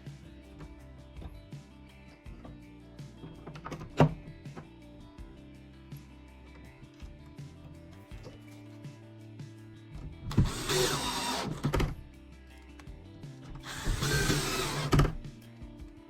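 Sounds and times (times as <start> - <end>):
background music: 0.0 - 16.0
power drill running: 10.3 - 12.0, 13.5 - 15.2.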